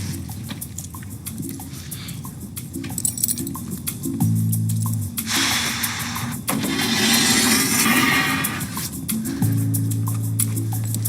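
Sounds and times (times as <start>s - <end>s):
hissing noise: 5.1s - 11.0s.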